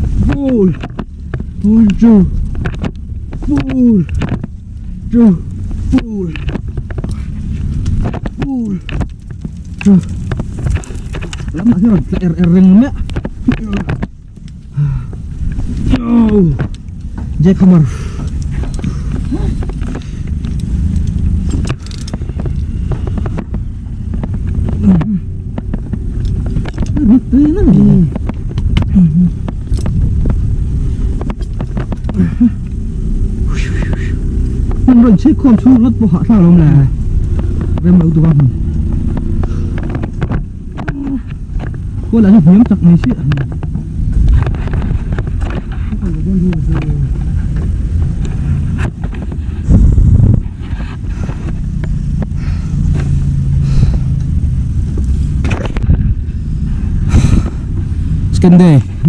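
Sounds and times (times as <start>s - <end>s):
engine rumbling: 0.0s - 59.0s
sharp knocks and clanks: 18.2s - 27.1s.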